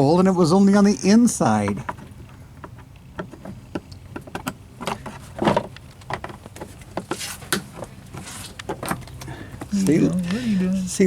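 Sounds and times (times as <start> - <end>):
rustling: 4.8 - 10.6.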